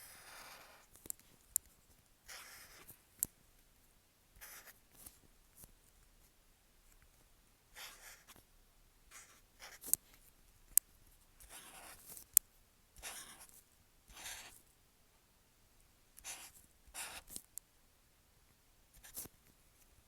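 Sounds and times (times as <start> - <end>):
marker scratching on paper: 0.0 - 0.9, 2.3 - 3.0, 4.4 - 5.2, 7.8 - 8.4, 9.1 - 10.1, 11.4 - 12.2, 13.0 - 14.6, 16.2 - 17.4.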